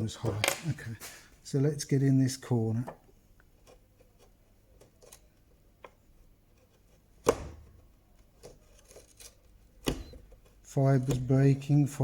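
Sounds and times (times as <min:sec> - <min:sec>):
chisel clicking and scraping wood: 0:02.9 - 0:11.5.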